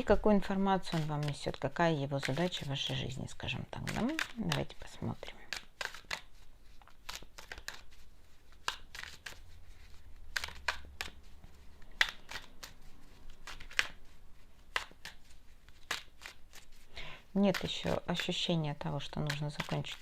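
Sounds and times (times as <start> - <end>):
cards being shuffled by hand: 0.0 - 20.0.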